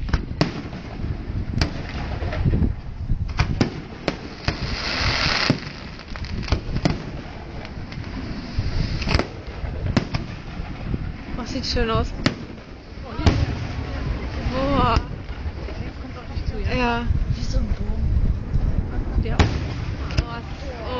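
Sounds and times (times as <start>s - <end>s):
fireworks bursting: 0.0s - 2.4s, 3.2s - 16.0s, 19.2s - 20.8s
constant low rumble: 0.0s - 20.9s
hissing firework burst: 3.4s - 10.9s, 12.1s - 15.3s.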